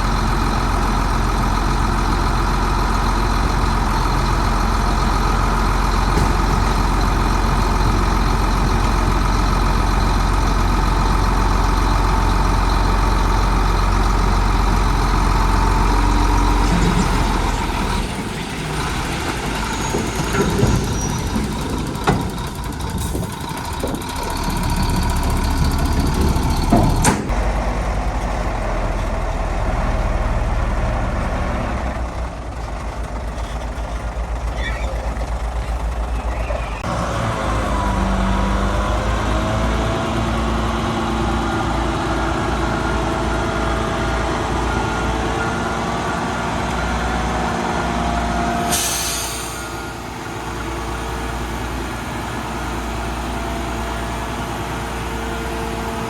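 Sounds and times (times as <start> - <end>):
diesel machinery idling: 0.0 - 56.0
machinery knocks and clanks: 5.3 - 9.6, 14.5 - 27.5.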